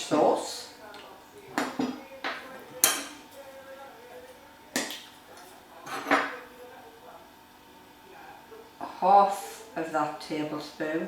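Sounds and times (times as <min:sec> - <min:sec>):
kitchenware clinking: 0:00.9 - 0:03.4, 0:05.8 - 0:06.5.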